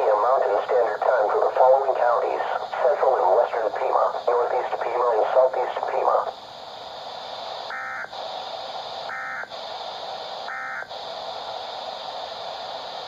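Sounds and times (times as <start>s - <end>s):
radio hiss: 0.0s - 13.0s.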